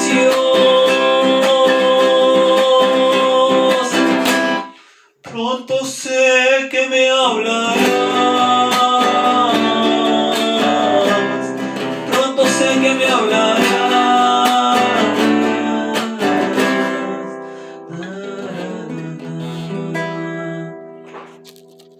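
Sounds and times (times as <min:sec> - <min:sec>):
acoustic guitar strumming: 0:00.0 - 0:05.0, 0:06.8 - 0:21.9.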